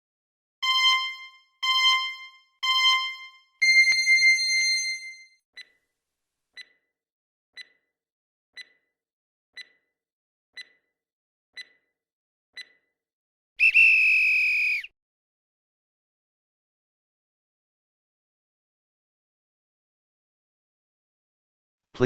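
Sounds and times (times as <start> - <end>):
timer ticks: 0.6 - 4.8, 5.6 - 5.8, 6.6 - 6.9, 7.6 - 8.0, 8.6 - 9.0, 9.6 - 10.0, 10.6 - 11.0, 11.6 - 12.0, 12.6 - 13.0
chime ringing: 0.6 - 5.3
loud held beep: 0.6 - 5.3.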